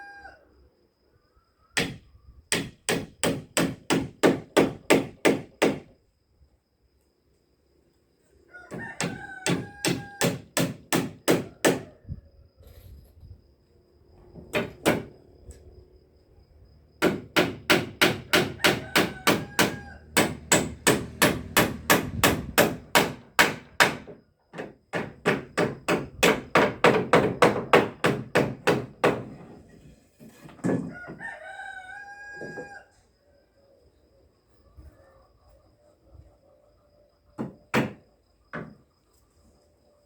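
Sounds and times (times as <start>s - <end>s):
rooster crowing: 0.0s - 0.6s, 8.5s - 10.4s, 11.4s - 12.2s, 18.1s - 20.4s, 30.6s - 33.2s
hammering on wood: 1.8s - 5.9s, 9.0s - 11.9s, 14.5s - 15.1s, 17.0s - 29.4s, 37.4s - 38.8s.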